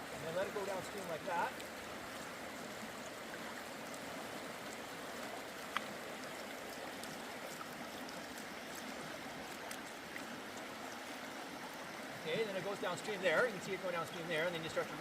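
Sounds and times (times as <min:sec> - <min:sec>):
creek rushing over rocks: 0:00.0 - 0:15.0.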